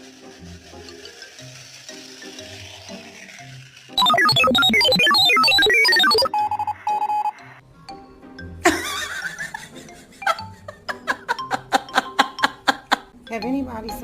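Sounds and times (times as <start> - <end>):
music: 0.0 - 14.0
rapid electronic beeping: 4.0 - 7.4.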